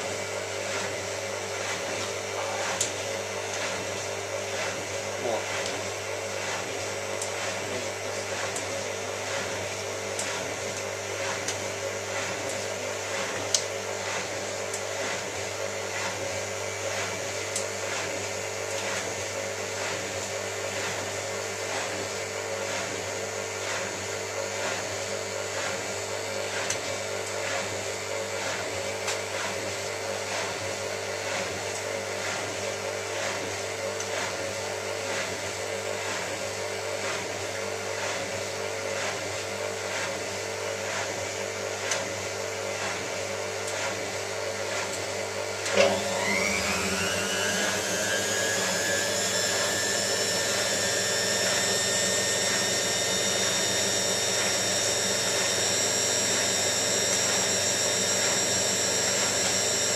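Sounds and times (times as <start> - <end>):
spin motor whine: 0.0 - 59.9
washing machine humming: 0.0 - 59.9.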